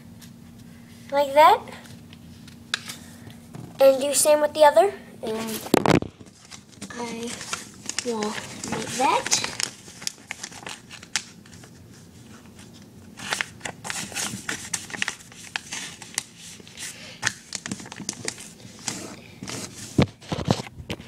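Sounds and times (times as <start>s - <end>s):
paper being folded and creased: 5.3s - 21.0s.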